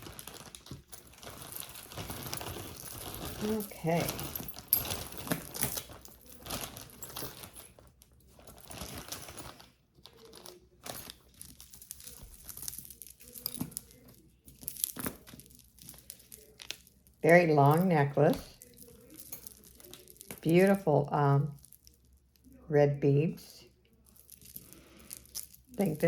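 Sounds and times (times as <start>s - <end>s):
packaging crinkling and rustling: 0.0s - 17.1s, 18.3s - 20.5s.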